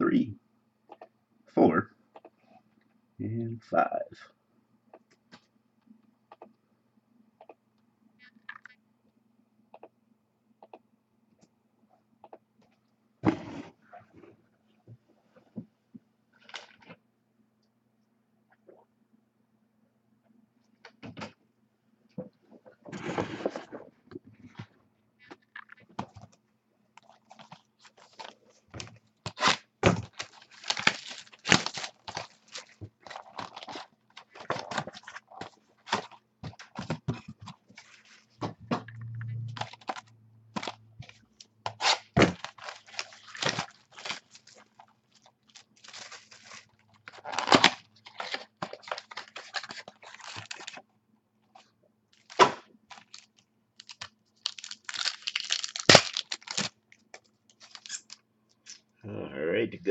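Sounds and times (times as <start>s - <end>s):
foil packs torn and crinkled: 29.2s - 36.2s, 41.8s - 50.8s, 52.2s - 58.2s.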